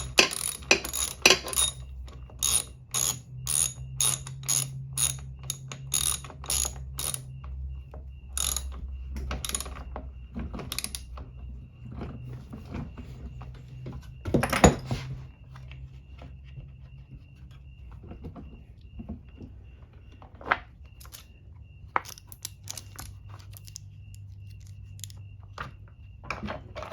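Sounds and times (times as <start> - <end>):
socket ratchet clicking: 0.0 - 7.3, 8.4 - 8.7.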